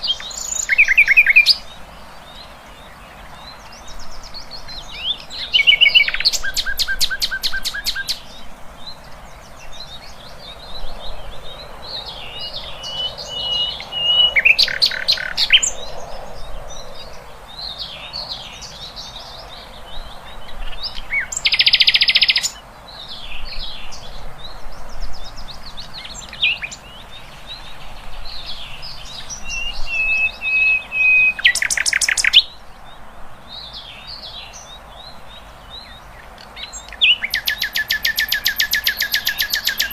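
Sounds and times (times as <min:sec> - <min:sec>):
songbird chattering: 0:04.8 - 0:08.4, 0:12.2 - 0:15.8, 0:17.6 - 0:22.6, 0:28.3 - 0:32.6, 0:35.3 - 0:39.9
rapid rattling bird trills: 0:36.6 - 0:39.9.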